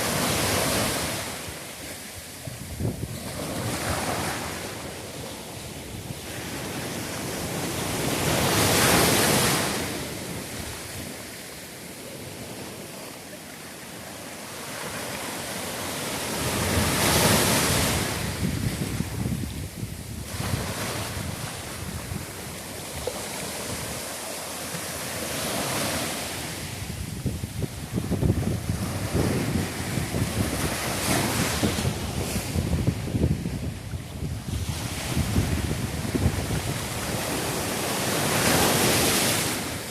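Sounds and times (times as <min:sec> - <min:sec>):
sea waves breaking: 0:00.0 - 0:39.9
wind buffeting microphone: 0:02.4 - 0:11.2, 0:16.4 - 0:24.1, 0:26.4 - 0:39.7.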